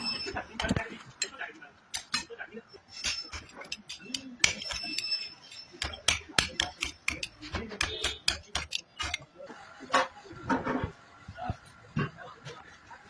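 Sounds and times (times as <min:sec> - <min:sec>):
hard objects knocking and clinking: 0:00.0 - 0:01.0, 0:02.9 - 0:09.2.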